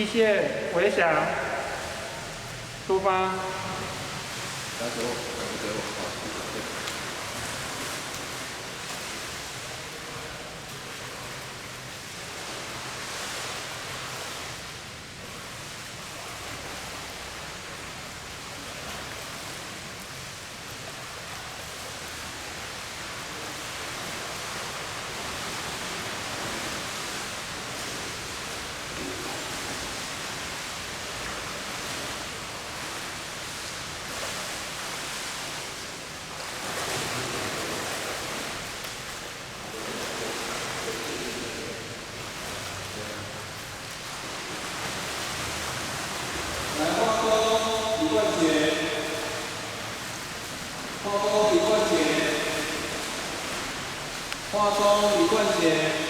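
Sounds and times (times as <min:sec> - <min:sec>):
swimmer splashing water: 0:00.0 - 0:56.0.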